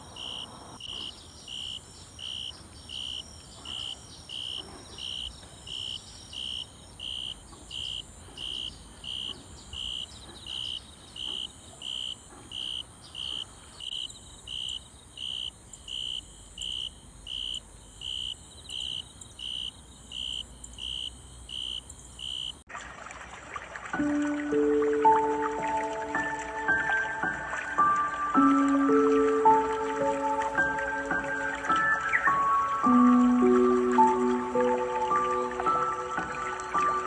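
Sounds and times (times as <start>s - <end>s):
insect chirping in high pulses: 11.9s - 22.6s
music: 24.0s - 37.0s.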